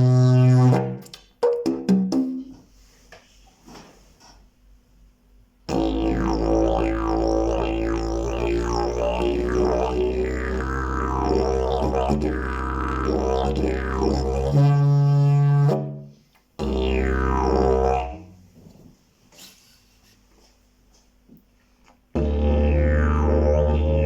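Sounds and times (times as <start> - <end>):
didgeridoo droning: 0.0 - 1.0, 5.7 - 18.5, 22.1 - 24.0.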